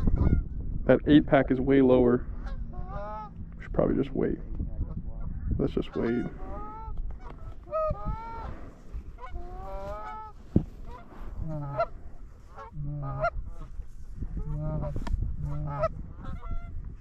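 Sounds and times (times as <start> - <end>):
geese honking: 2.4 - 3.4, 5.2 - 13.8, 14.4 - 16.8.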